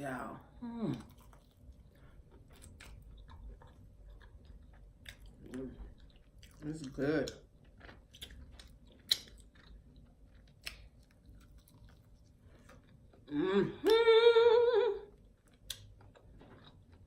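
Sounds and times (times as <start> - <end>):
chewing fried chicken: 0.9 - 13.3, 15.1 - 17.0
woman humming: 13.3 - 15.2.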